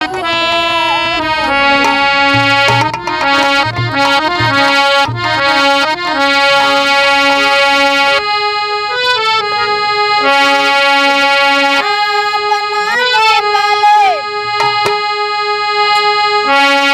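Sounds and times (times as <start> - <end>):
free-reed keyboard melody: 0.0 - 16.9
low drum thumps: 1.8 - 6.3, 14.5 - 15.2.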